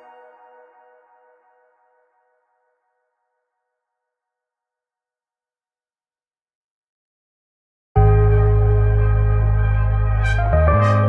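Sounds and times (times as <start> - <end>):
background music held chord: 8.0 - 11.0.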